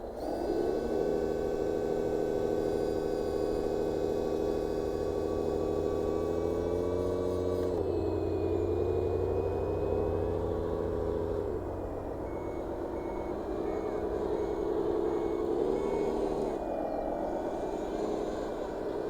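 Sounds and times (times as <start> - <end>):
model engine droning: 0.0 - 19.0
reversing beeper short high beeps: 8.2 - 17.8.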